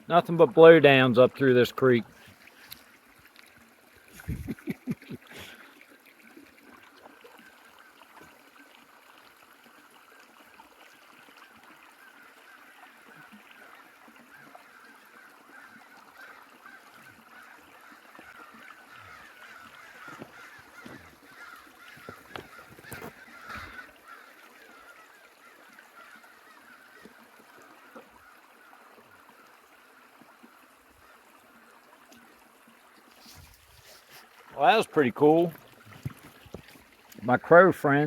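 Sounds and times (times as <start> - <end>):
crows cawing: 17.4 - 27.1.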